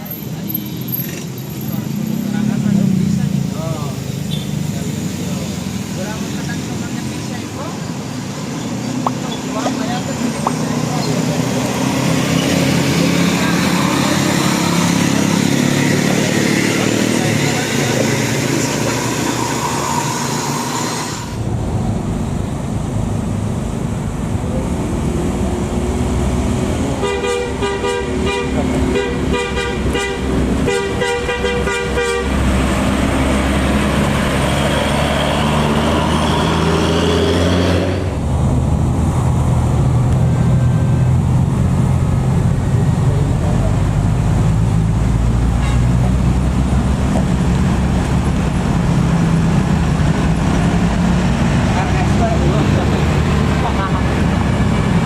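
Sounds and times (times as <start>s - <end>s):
heavy vehicle engines running: 0.0s - 55.0s
bus musical horn tune: 27.0s - 32.4s, 45.6s - 46.0s.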